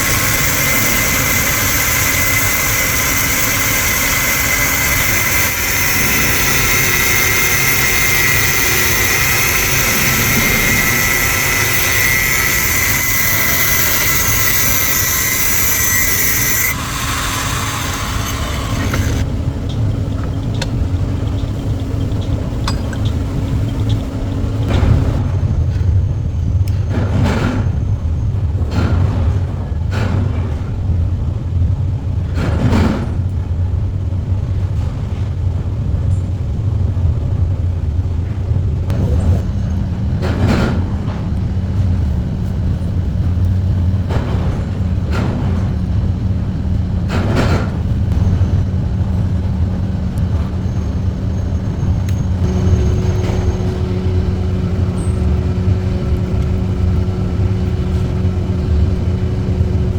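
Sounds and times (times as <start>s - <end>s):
low rumble: 18.8s - 59.9s.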